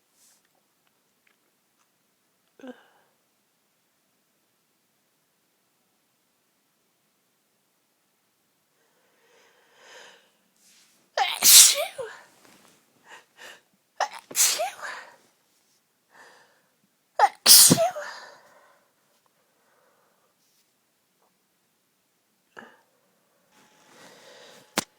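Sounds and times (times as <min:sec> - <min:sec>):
woman sneezing: 0:11.2 - 0:12.2, 0:14.0 - 0:15.1, 0:17.2 - 0:18.3.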